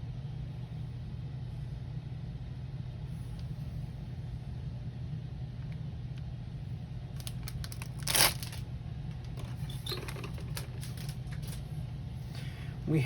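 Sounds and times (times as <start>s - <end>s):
low hum: 0.0s - 13.0s
plastic bag crinkling: 7.2s - 8.7s, 9.4s - 11.7s
plastic bag ripping: 7.2s - 8.7s, 9.8s - 11.6s.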